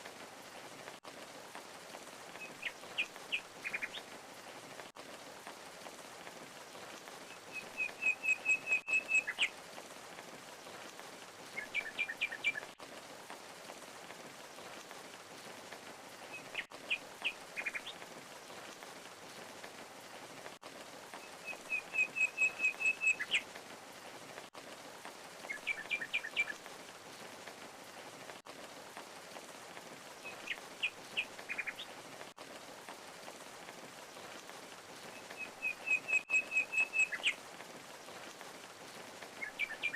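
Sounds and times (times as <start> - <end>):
songbird singing: 2.4 - 4.1, 7.2 - 9.5, 11.5 - 12.8, 21.2 - 23.6, 25.4 - 26.6, 30.2 - 31.9, 35.0 - 37.4, 39.4 - 39.9.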